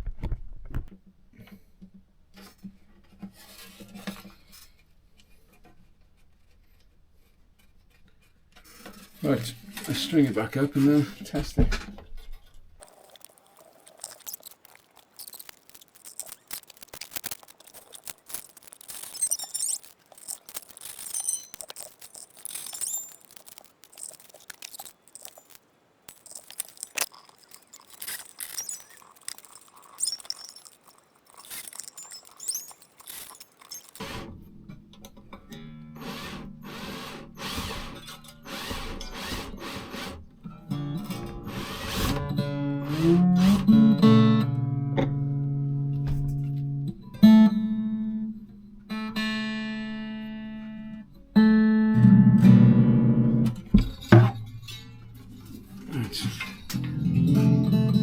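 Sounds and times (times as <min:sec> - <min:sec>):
low sustained guitar notes: 0:56.6 - 0:58.0.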